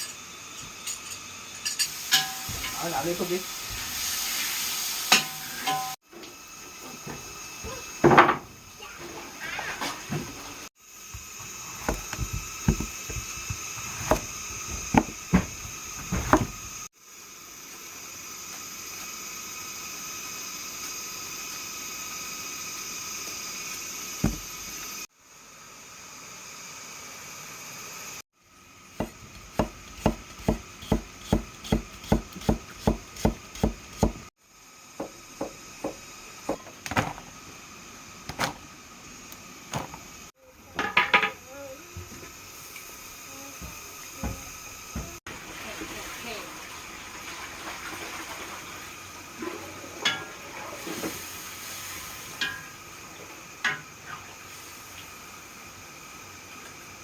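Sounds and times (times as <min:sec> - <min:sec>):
knife chopping on wooden board: 0:11.8 - 0:15.5, 0:24.2 - 0:24.5, 0:29.0 - 0:34.3.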